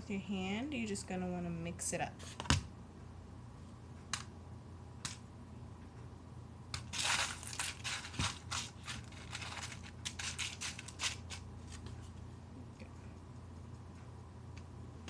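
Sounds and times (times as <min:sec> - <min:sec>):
tortilla chips crunching in bowl: 0:06.8 - 0:11.9.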